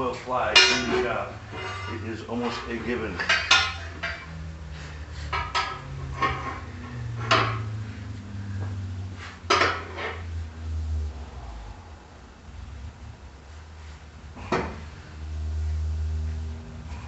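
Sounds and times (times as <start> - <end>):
hammer on steel clanks: 0.5 - 1.9
low drone: 3.9 - 17.0.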